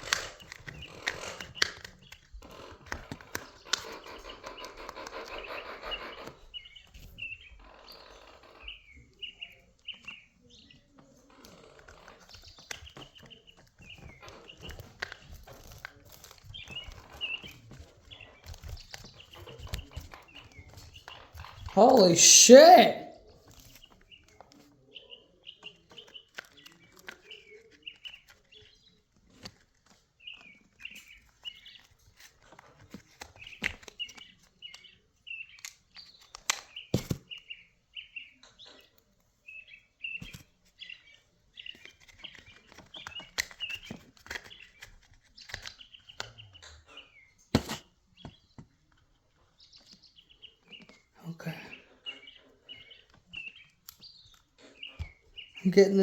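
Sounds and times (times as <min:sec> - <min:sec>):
small bird chirping: 0:03.3 - 0:21.7.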